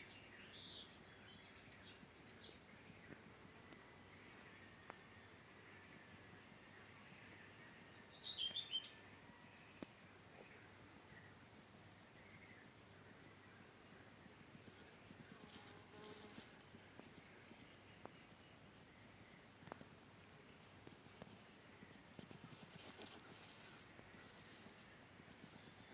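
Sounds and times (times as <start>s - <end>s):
soft clicks and rustles: 22.2s - 25.9s.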